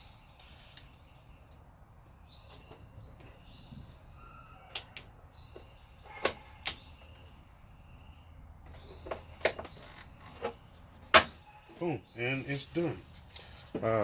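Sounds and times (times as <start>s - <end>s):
faint bird chirps: 0.0s - 10.8s.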